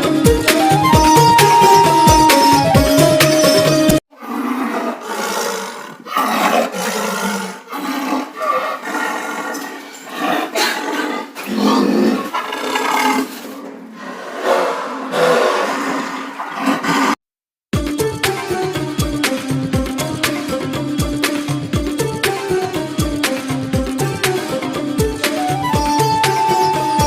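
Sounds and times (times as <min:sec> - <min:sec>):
roar-like animal calls: 0:04.1 - 0:17.2.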